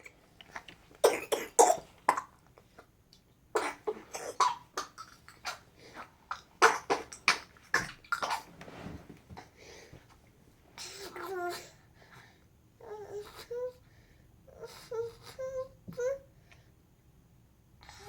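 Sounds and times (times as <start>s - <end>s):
person coughing harshly: 1.0s - 2.3s.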